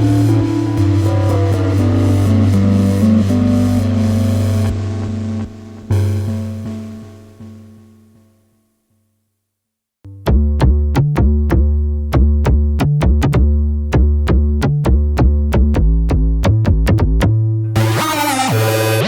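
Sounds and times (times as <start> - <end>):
synthesizer bass line: 0.0 - 8.2, 10.1 - 19.0
drum machine beat: 10.1 - 19.0.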